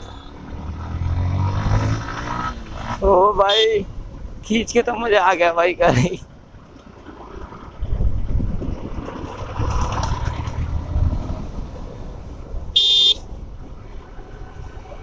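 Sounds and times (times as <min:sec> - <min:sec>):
motorcycle riding: 0:00.0 - 0:04.4, 0:06.9 - 0:15.0
vehicle horn toot: 0:03.5 - 0:03.8, 0:12.8 - 0:13.2
wind on microphone: 0:07.4 - 0:15.0.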